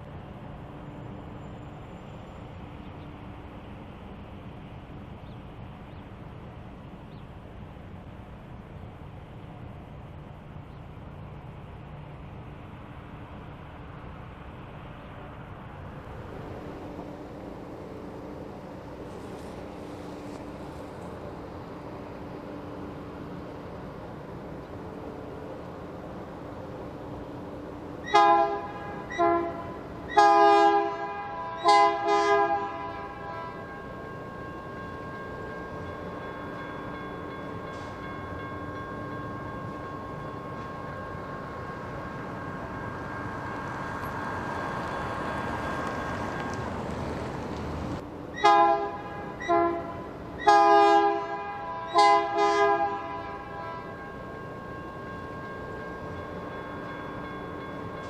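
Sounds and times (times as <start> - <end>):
locomotive engine rumble: 0.0 - 50.7
locomotive air horn blasts: 28.0 - 33.8, 48.4 - 54.1.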